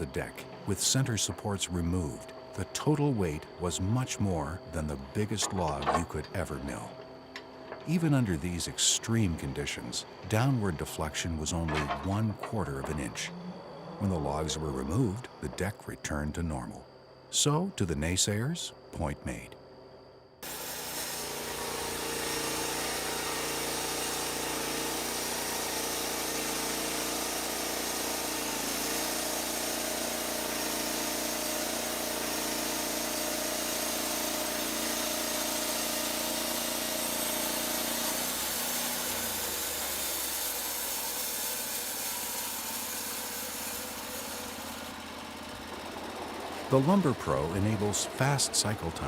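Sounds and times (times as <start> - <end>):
band saw blade cutting log: 20.4 - 49.0
engine running at speed: 44.6 - 49.0.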